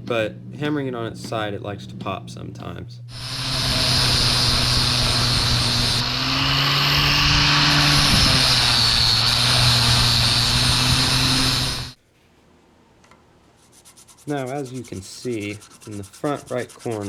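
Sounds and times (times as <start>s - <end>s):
machine hissing over motor hum: 3.1s - 12.0s.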